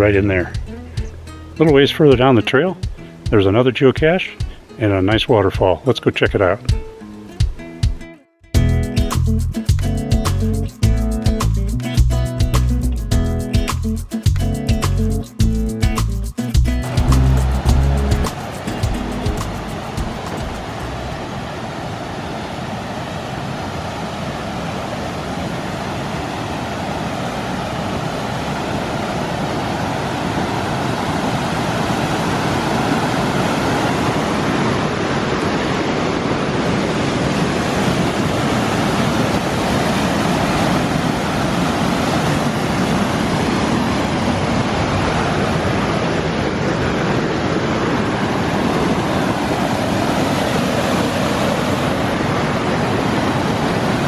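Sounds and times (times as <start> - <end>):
waterfall rushing: 16.8 - 54.0.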